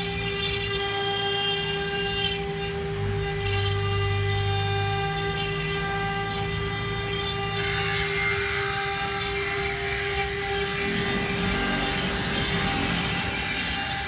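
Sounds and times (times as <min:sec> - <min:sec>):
engraving machine spindle whine: 0:00.0 - 0:14.0
stone cutting hiss: 0:07.6 - 0:14.0.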